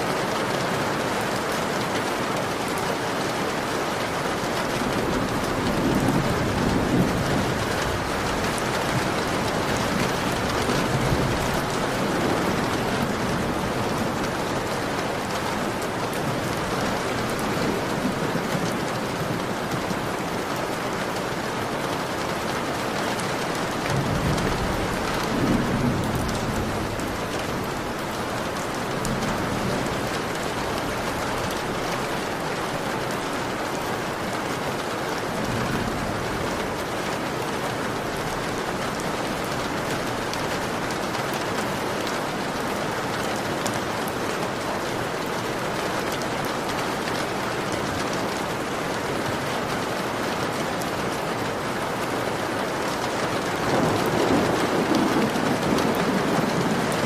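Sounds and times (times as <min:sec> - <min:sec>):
heavy rain on a window: 0:00.0 - 0:57.0.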